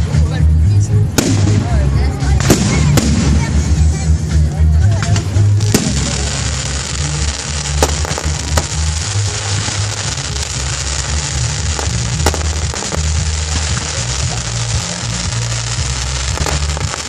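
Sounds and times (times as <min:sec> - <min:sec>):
music with bass line: 0:00.0 - 0:17.0
fireworks crackling: 0:01.0 - 0:17.0
fireworks bangs: 0:02.4 - 0:04.0, 0:05.1 - 0:17.0.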